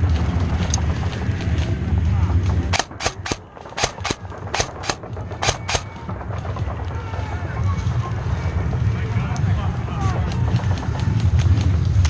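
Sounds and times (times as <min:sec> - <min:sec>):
airsoft gun shots: 0:02.8 - 0:06.0
wind rumble on microphone: 0:06.0 - 0:12.0.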